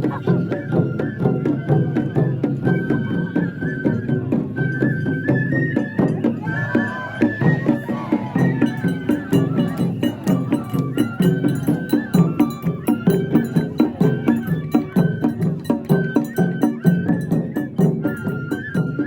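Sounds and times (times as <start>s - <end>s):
high flute melody: 0.0s - 19.0s
quick drum beats: 6.4s - 18.5s.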